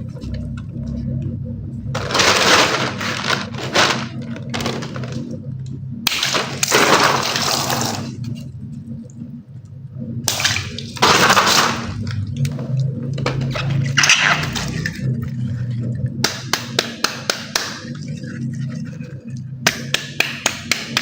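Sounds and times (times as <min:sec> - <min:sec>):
water gushing and splashing: 0:10.3 - 0:12.3.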